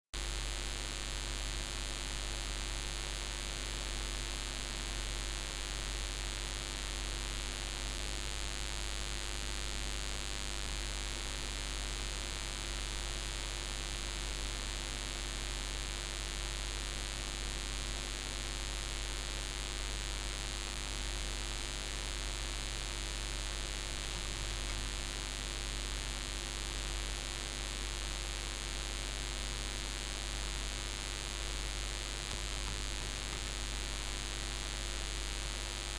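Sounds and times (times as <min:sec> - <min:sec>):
low mains hum: 0:00.2 - 0:35.9
electrical hiss: 0:31.9 - 0:34.3.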